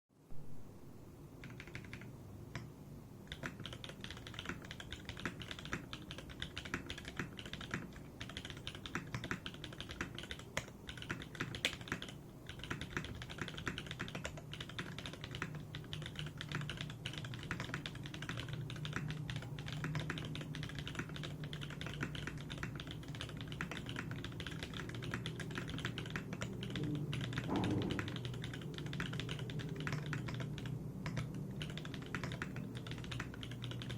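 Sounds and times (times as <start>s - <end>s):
mechanical keyboard key clacks: 3.3s - 33.9s.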